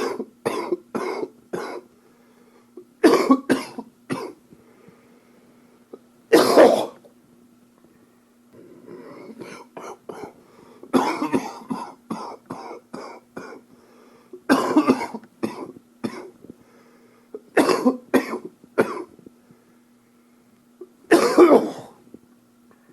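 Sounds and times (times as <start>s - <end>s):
man coughing: 0.0s - 1.9s, 3.0s - 4.4s, 6.3s - 7.0s, 9.3s - 10.3s, 10.9s - 13.6s, 14.5s - 16.3s, 17.6s - 19.1s, 21.1s - 22.0s.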